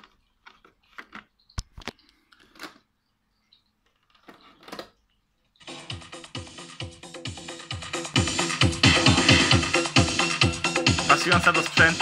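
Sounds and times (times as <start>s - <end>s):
music with electronic beat: 5.6s - 12.0s.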